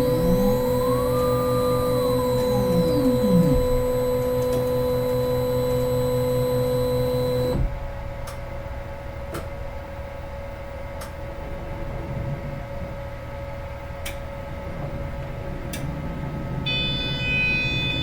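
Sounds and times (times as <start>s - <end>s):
mri scanner humming: 0.0s - 7.7s, 16.5s - 18.0s.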